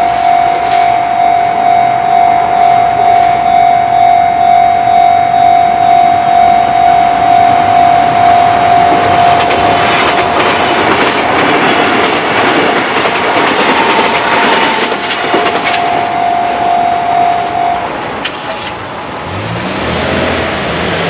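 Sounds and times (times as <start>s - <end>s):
railroad crossing bell ringing: 0.0s - 19.4s
train passing with rushing noise: 0.0s - 21.0s.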